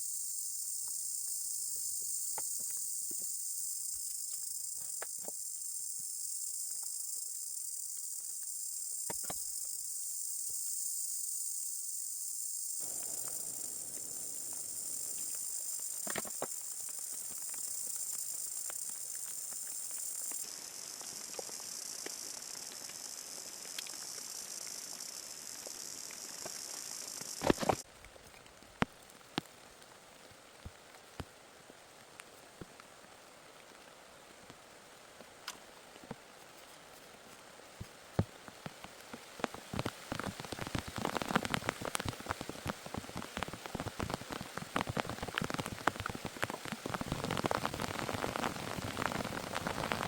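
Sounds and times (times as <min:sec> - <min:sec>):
insect chorus buzzing: 0:00.0 - 0:27.8, 0:39.4 - 0:50.0.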